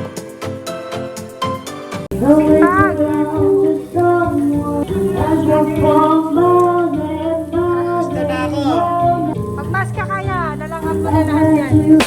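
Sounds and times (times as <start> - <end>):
instrumental backing: 0.0 - 12.0
woman singing long gliding notes: 2.1 - 9.4.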